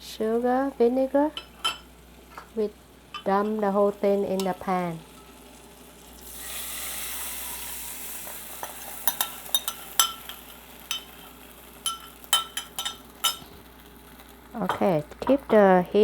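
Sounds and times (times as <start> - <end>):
sauce sizzling in a pan: 0.2 - 16.0
utensil clinking against pan: 9.1 - 11.2, 11.8 - 13.5.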